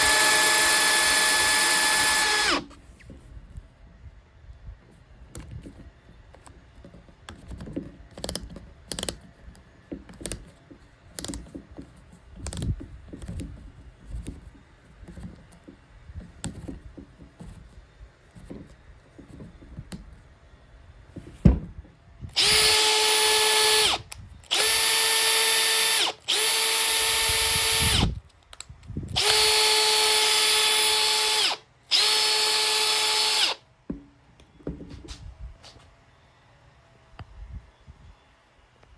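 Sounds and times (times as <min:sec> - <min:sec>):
cordless drill whining: 0:00.0 - 0:02.8, 0:22.3 - 0:28.2, 0:29.1 - 0:33.6.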